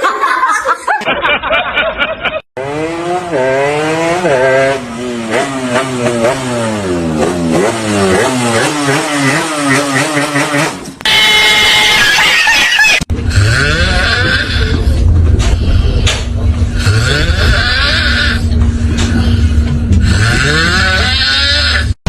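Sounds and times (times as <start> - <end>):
engine revving: 2.6 - 11.4, 13.1 - 22.0.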